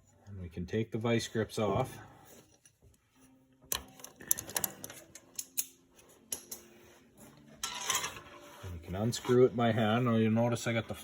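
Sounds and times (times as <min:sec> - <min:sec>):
metal clicks and taps of pliers: 0:03.7 - 0:06.6.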